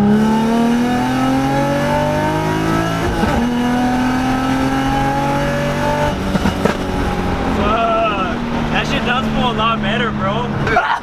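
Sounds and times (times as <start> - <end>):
car engine accelerating: 0.0 - 11.0.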